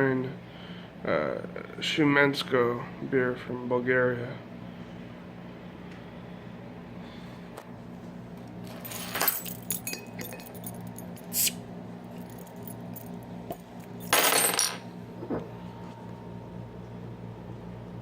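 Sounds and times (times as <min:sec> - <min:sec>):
metallic clicks and clinks: 0:08.7 - 0:11.5.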